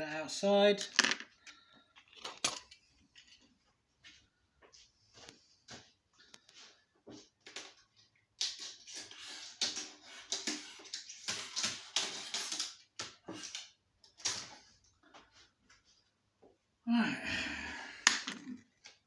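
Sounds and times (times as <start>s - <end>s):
parts clattering and rustling: 0.8s - 3.7s.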